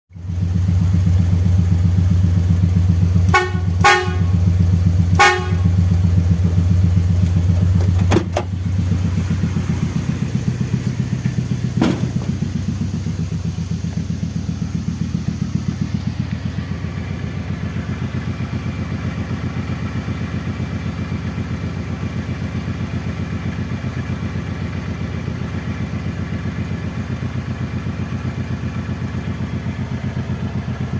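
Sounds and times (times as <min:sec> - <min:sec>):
engine idling: 0:00.1 - 0:30.9
truck horn toots: 0:03.2 - 0:06.1.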